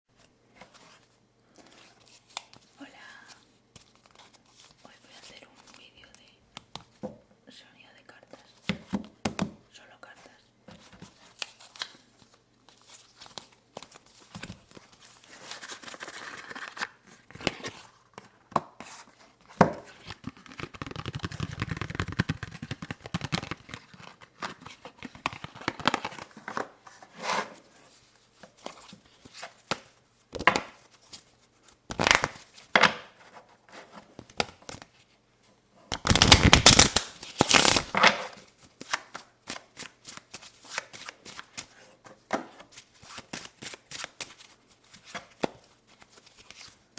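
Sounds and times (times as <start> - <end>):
playing cards tapping and flicking: 19.6 - 26.4, 31.9 - 32.4, 35.9 - 38.0, 43.0 - 46.8
rapid card flicking: 20.3 - 23.8
cards rubbing and sliding: 36.0 - 37.9.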